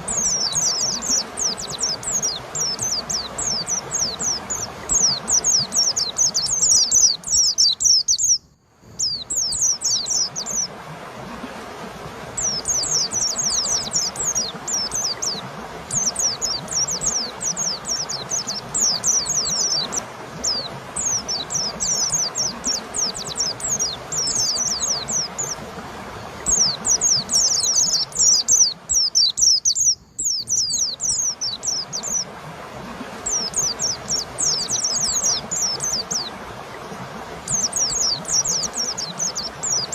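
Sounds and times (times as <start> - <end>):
bird singing rapid high chirps: 26.5 - 32.2.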